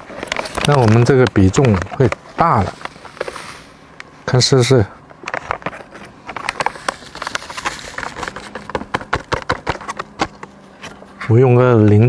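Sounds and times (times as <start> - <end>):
plastic clicks and rustles: 0.0 - 3.4, 5.0 - 11.0.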